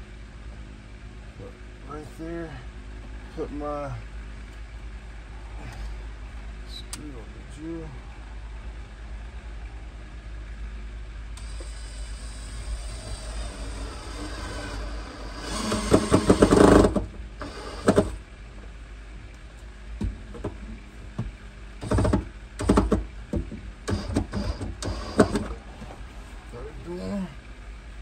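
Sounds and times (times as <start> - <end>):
steady low hum: 0.0 - 28.0
cordless drill driving screw: 11.4 - 18.2, 23.9 - 25.6
knocks and clatters: 20.0 - 24.4.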